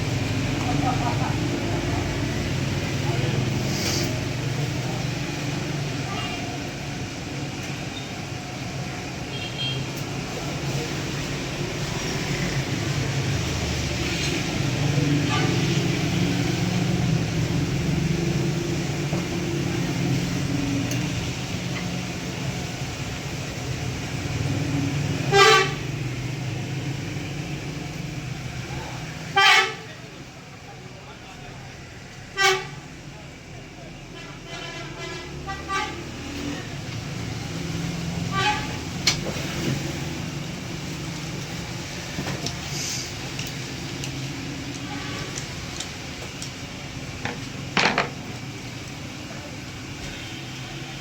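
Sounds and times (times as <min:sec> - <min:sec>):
vehicle horn honks: 0:25.3 - 0:25.8.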